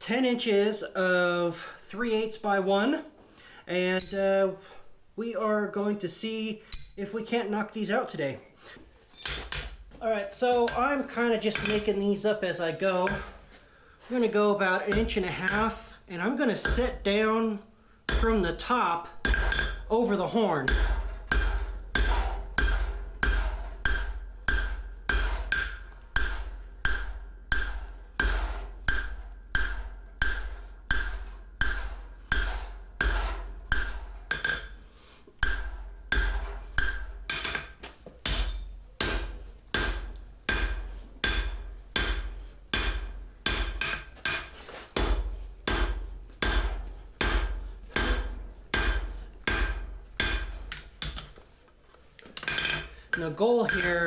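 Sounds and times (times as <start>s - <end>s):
hammer striking steel on anvil: 6.7s - 7.0s, 20.6s - 34.8s, 35.4s - 51.3s, 52.5s - 54.0s.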